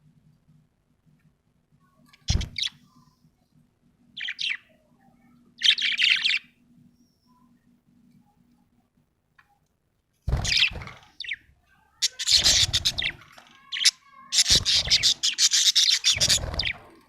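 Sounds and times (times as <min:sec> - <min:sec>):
budgerigar chattering: 0:12.0 - 0:13.2, 0:13.8 - 0:16.8.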